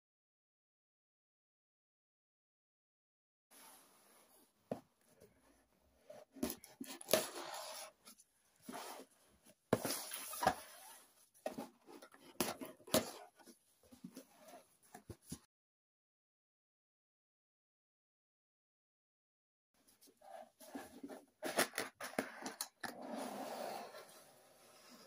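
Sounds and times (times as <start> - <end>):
packaging rustling and scraping: 6.2 - 15.4, 20.0 - 25.0.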